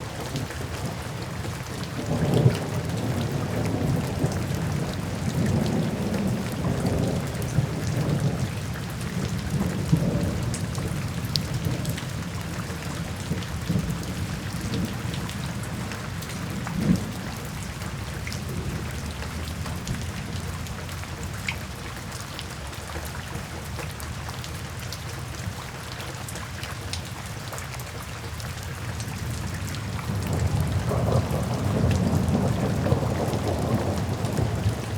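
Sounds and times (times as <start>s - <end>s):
steady rain falling: 0.0s - 34.9s
rolling thunder: 1.6s - 20.6s, 29.2s - 34.9s
thunder crack: 30.1s - 34.9s.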